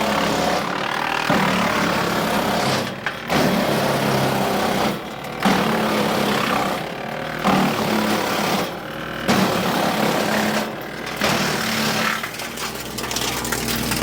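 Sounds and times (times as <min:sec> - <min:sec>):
wood chipper chipping branches: 0:00.0 - 0:14.0.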